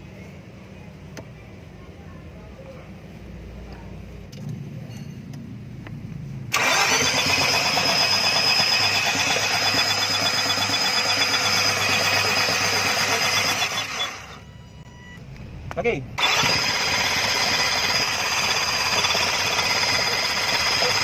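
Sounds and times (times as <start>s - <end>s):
starter motor cranking engine: 6.5s - 14.4s, 16.2s - 21.0s.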